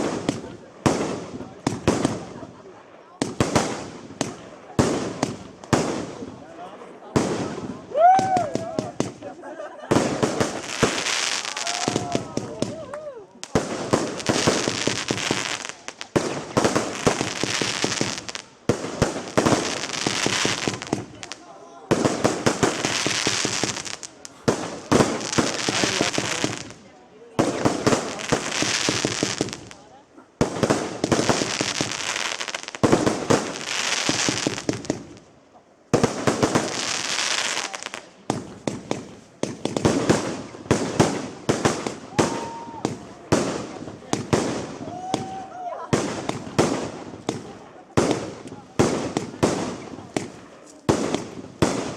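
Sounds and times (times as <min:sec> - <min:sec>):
fireworks bangs: 0:00.0 - 0:35.3, 0:35.9 - 0:51.9
fireworks crackling: 0:00.0 - 0:51.9.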